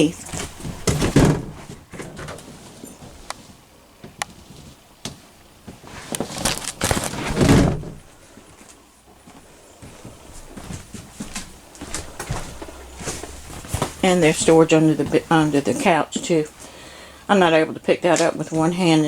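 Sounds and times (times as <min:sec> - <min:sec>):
clattering thud of platform: 0:00.6 - 0:01.8.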